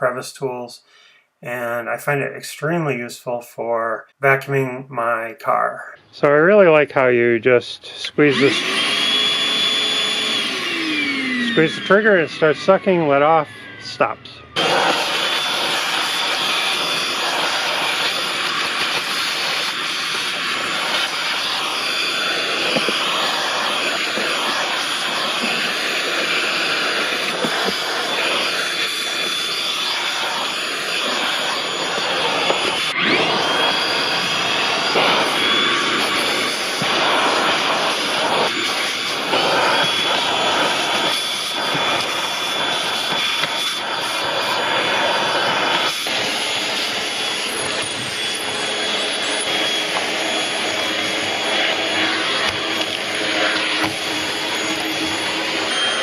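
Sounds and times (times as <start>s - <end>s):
vacuum cleaner whining: 7.8s - 56.0s.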